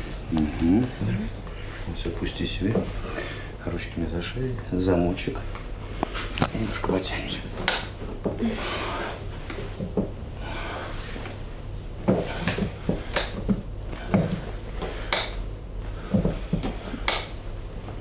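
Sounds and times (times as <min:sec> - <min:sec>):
rustling on treatment table: 0:05.5 - 0:18.0.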